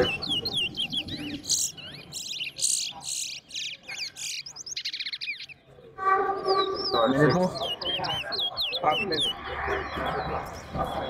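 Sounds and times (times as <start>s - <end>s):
songbirds chirping: 0.0s - 11.0s.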